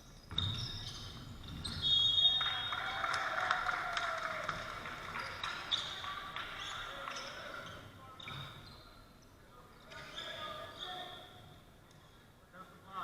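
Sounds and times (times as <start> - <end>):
sneakers squeaking: 0.0 - 2.8, 5.0 - 11.6.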